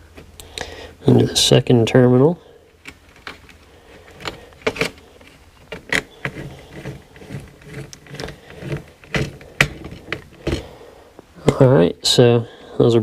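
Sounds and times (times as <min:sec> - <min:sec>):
screwdriver clicks and scrapes: 0:02.8 - 0:10.6
handling noise: 0:02.8 - 0:11.7.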